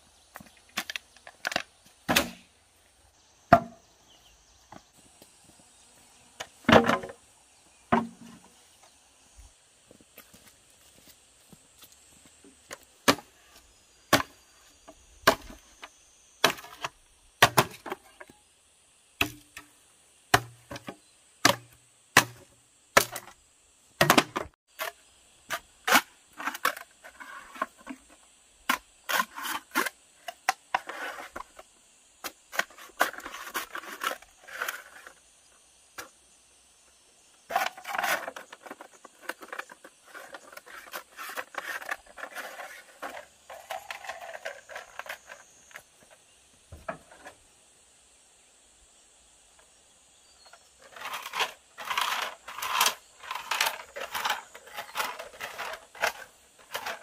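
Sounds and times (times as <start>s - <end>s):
scraping and rustling: 32.3s - 35.2s, 37.5s - 46.2s, 50.5s - 57.0s.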